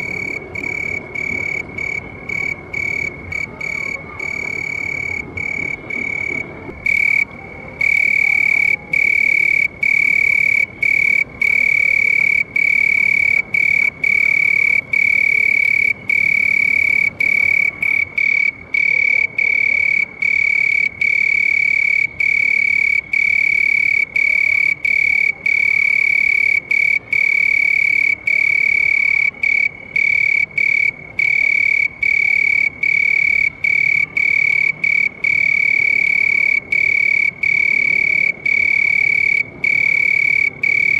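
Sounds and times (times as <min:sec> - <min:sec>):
cricket chirping: 0:00.0 - 0:40.9.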